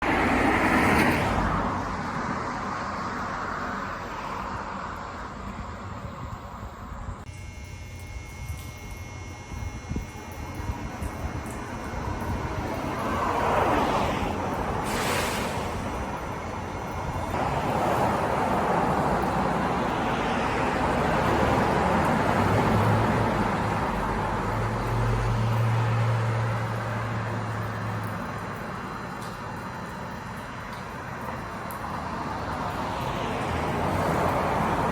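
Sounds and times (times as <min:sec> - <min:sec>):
low engine hum: 0:00.0 - 0:34.9
passing vehicle rushing: 0:12.3 - 0:27.7.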